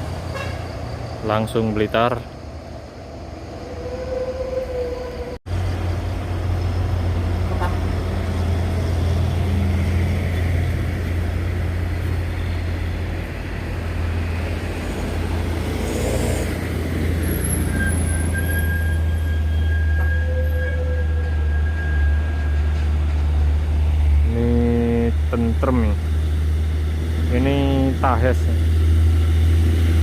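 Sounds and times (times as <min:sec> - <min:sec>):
heavy vehicle engine droning: 0:00.0 - 0:03.7, 0:05.1 - 0:30.0
vehicle horn: 0:00.3 - 0:00.7, 0:07.5 - 0:07.9.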